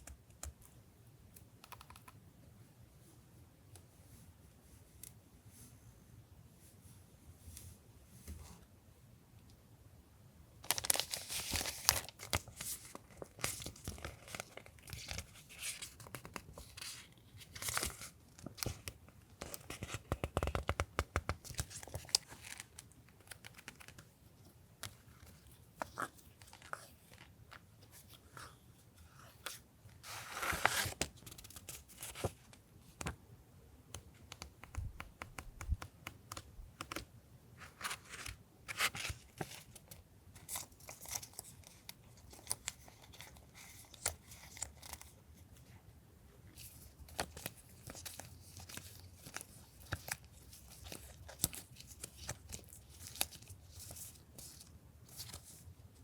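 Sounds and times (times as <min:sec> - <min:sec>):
small clicks and taps: 0:33.9 - 0:37.0.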